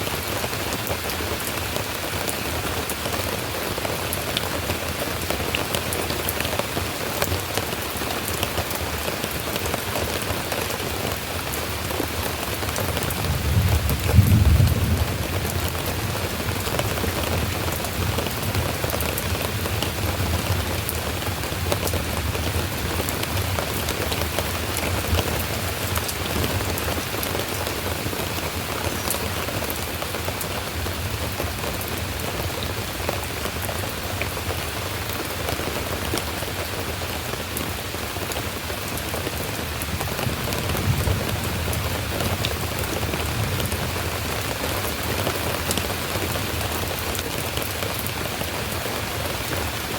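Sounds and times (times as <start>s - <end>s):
steady rain falling: 0.0s - 49.9s
thunder rumble: 13.1s - 18.6s.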